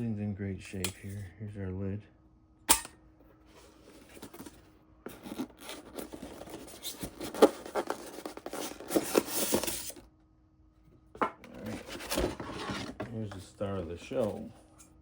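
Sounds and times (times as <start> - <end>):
packaging scratching and rustling: 3.6 - 10.0, 11.5 - 14.5.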